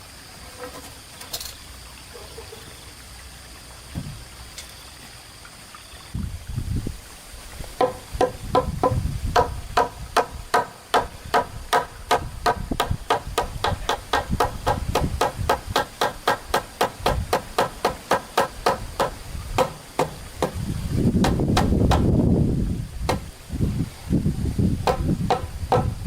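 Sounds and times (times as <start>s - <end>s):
tool strikes on hard surface: 7.8s - 20.6s, 21.2s - 22.1s, 24.8s - 26.0s.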